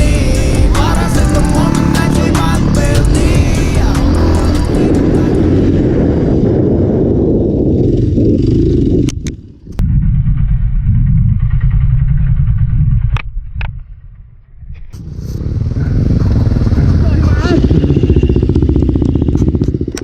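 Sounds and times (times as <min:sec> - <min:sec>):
motorcycle engine rumbling: 0:00.0 - 0:20.0
sharp clicks: 0:19.0 - 0:20.0.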